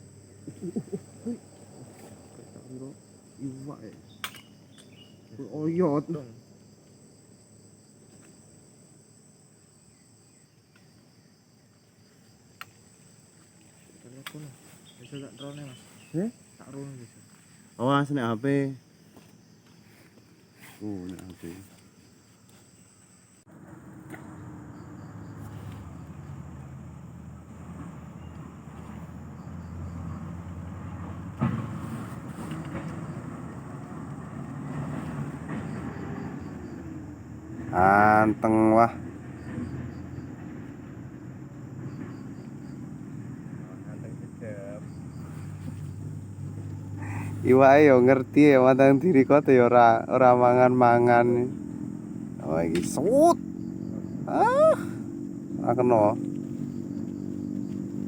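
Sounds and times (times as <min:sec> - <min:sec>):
insects chirring: 0:00.0 - 0:58.0
low engine-like rumble: 0:23.4 - 0:48.6.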